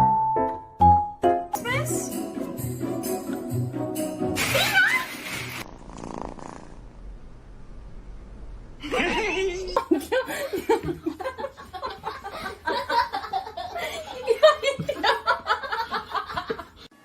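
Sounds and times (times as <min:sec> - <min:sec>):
person laughing: 0:08.8 - 0:16.8.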